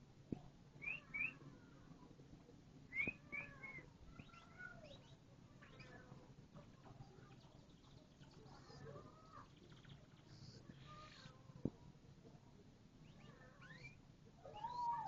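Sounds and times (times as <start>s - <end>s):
low steady hum: 0.0s - 15.0s
canary chirping: 0.8s - 1.6s, 3.0s - 11.4s, 13.0s - 14.0s.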